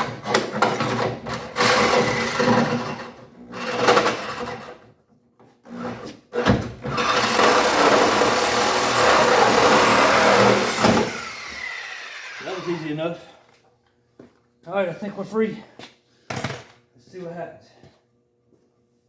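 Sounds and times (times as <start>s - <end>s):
power saw cutting metal: 6.9s - 13.0s.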